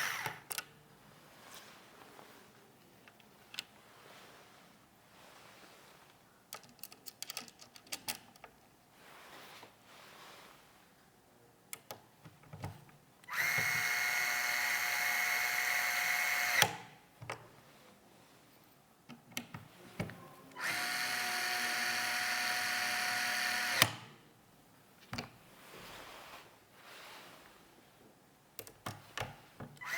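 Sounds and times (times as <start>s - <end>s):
electric screwdriver whining: 0.0s - 0.5s, 13.3s - 16.8s, 20.5s - 24.0s.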